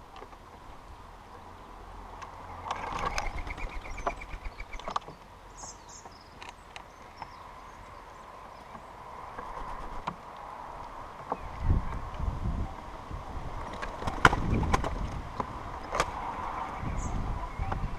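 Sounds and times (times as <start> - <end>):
birds pecking: 2.2 - 10.5, 13.6 - 16.6
bird trill: 2.8 - 5.0
bird chirps: 2.8 - 8.9.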